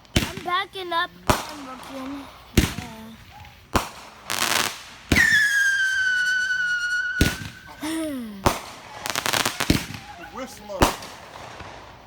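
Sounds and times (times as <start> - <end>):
crackling hiss: 0.0 - 12.0
firework bangs: 0.0 - 12.0
whistling firework shot: 2.5 - 12.0.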